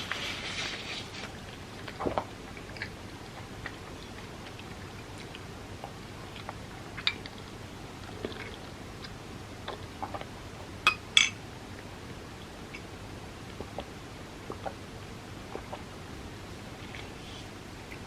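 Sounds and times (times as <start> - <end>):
soft chewing: 0.0 - 10.8, 15.5 - 16.0, 16.7 - 18.0.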